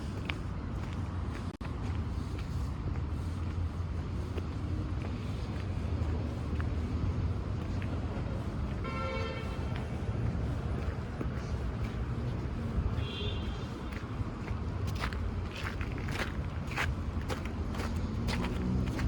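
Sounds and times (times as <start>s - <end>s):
traffic rumble: 0.0s - 19.0s
car horn toot: 8.8s - 9.5s.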